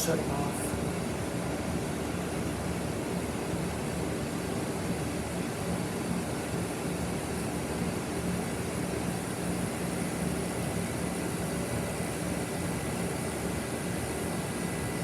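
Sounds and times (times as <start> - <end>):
compressor hum: 0.0 - 1.3
fan noise: 0.0 - 15.0.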